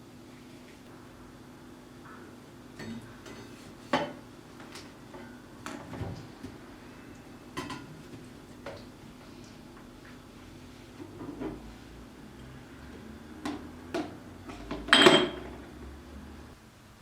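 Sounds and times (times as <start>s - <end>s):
faint steady hum: 0.0s - 17.0s
dishes and utensils clinking: 2.8s - 4.2s, 14.0s - 15.7s.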